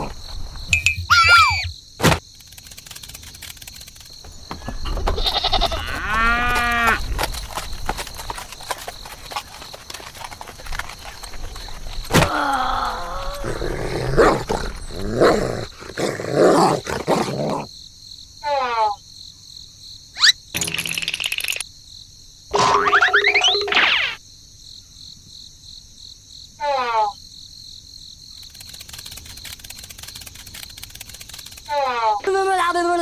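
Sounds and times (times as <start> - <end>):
rapid irregular clicking: 2.0 - 12.2, 28.4 - 31.8
farm animal bleating: 4.8 - 7.0.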